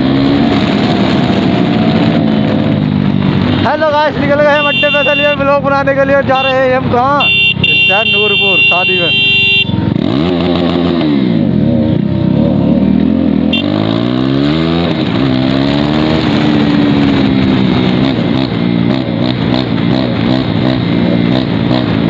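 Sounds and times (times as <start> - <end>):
motorcycle engine accelerating: 0.0 - 3.6, 9.4 - 22.0.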